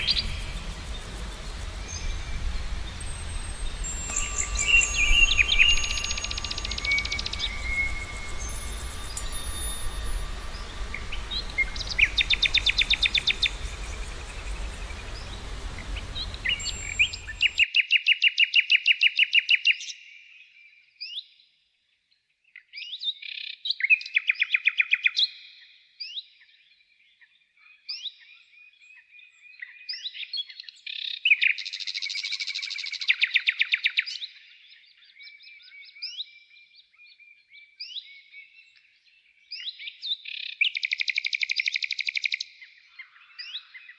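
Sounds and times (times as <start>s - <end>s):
hissy outdoor background: 0.0s - 17.6s
low hum: 0.0s - 17.6s
songbirds trilling and chirping: 0.0s - 17.6s.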